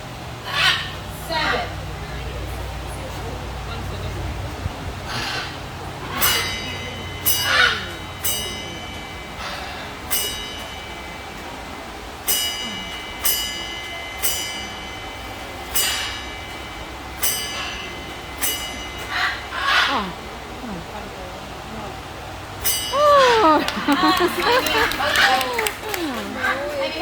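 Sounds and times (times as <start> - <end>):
small bell ringing: 6.0 - 20.7, 22.6 - 26.4.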